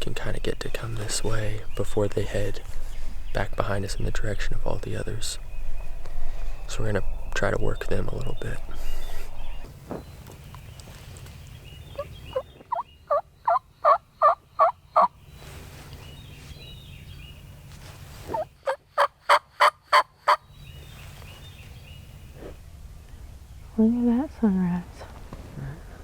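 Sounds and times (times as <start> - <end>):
turkey call yelps: 12.0 - 15.1.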